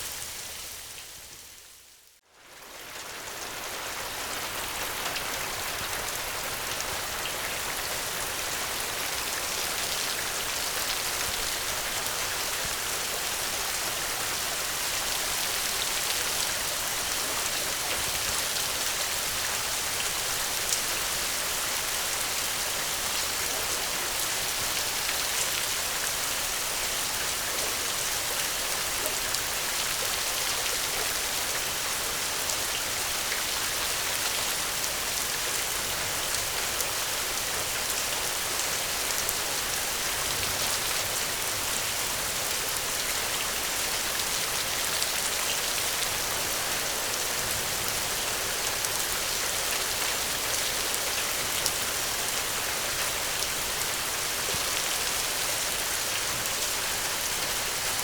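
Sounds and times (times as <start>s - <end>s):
dense rainfall: 0.0s - 58.0s.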